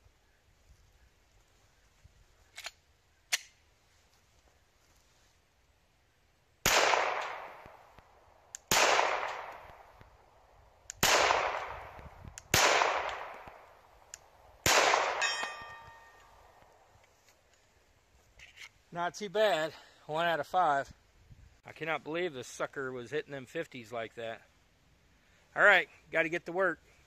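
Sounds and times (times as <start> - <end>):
pistol shots with echo: 6.6 - 7.8, 8.7 - 9.9, 11.0 - 13.6, 14.6 - 16.2
ringing after gunshot: 14.7 - 16.3.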